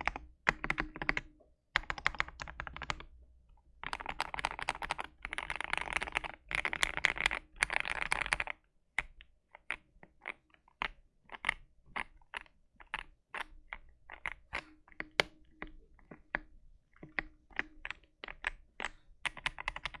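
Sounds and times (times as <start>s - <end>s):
mechanical keyboard typing: 0.0s - 3.1s, 3.8s - 8.6s, 17.8s - 20.0s.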